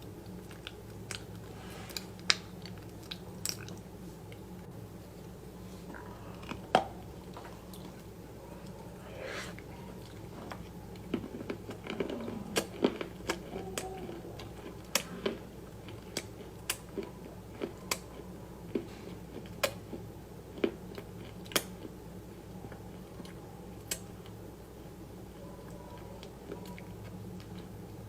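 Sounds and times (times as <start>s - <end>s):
crunchy food being chewed: 0.0s - 28.0s.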